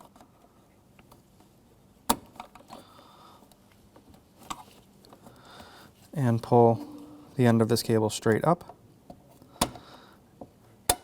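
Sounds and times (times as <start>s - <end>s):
faint scrape: 6.5s - 7.5s.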